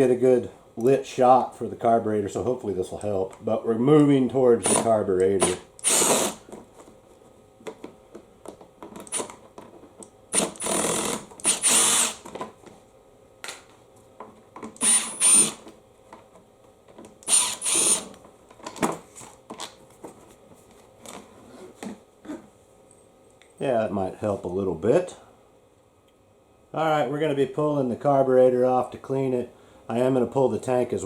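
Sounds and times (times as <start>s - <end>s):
power drill whining: 4.6s - 6.4s, 9.0s - 9.3s, 10.3s - 12.3s, 14.8s - 15.7s, 17.2s - 18.2s.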